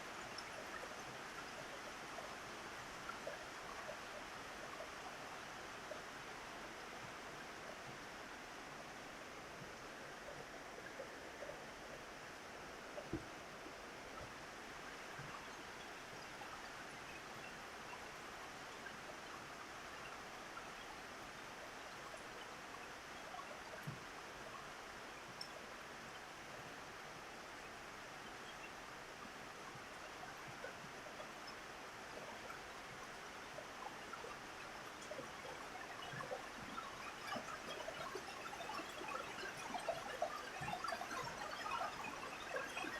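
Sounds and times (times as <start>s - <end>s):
dripping ticks: 0.1s - 5.0s, 14.2s - 26.2s, 27.6s - 42.9s.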